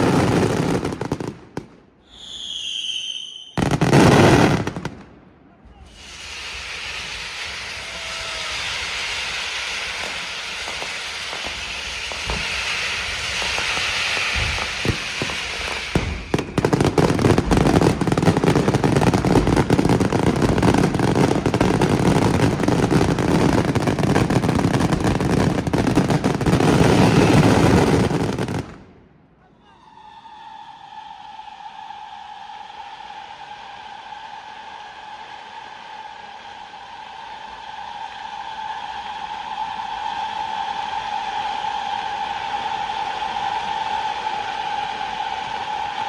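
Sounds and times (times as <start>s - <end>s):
fireworks bangs: 0.0s - 29.2s
fireworks hiss: 5.8s - 28.7s.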